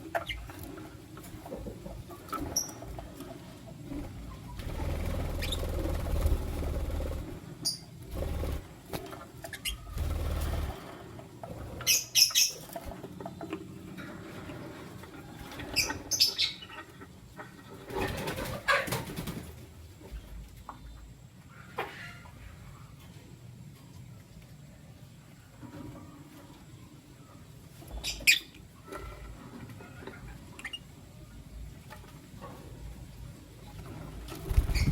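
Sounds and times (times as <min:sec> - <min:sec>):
birds fluttering and scuffling: 0:00.0 - 0:20.7, 0:27.5 - 0:34.9
wing flaps: 0:03.9 - 0:09.1, 0:09.8 - 0:11.0, 0:34.3 - 0:34.9.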